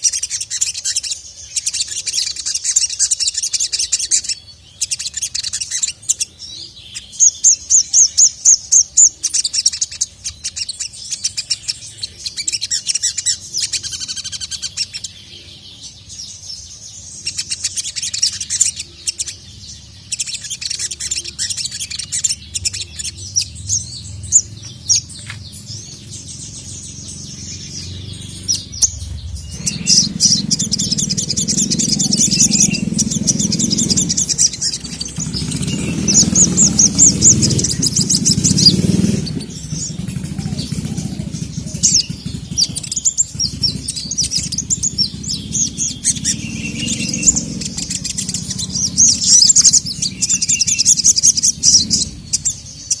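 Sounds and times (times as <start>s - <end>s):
bird twittering trills: 0.0s - 53.0s
low rumble: 22.4s - 52.7s.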